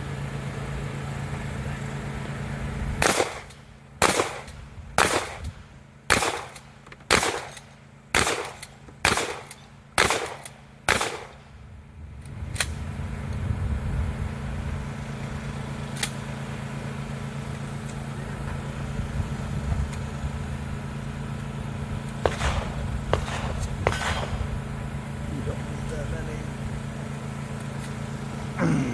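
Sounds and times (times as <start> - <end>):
faint hum: 0.0 - 28.9
gunshots: 3.0 - 5.5, 6.1 - 11.4, 22.2 - 24.8
low rumble: 22.2 - 26.8.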